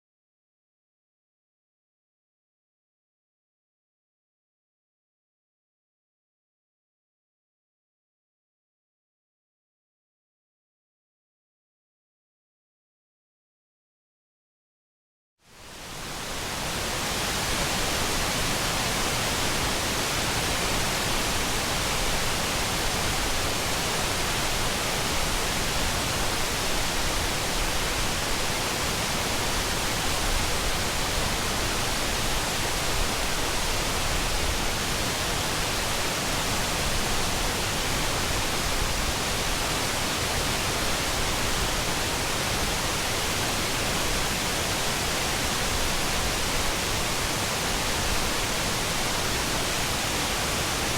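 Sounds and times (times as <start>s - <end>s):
waterfall rushing: 15.7s - 50.9s.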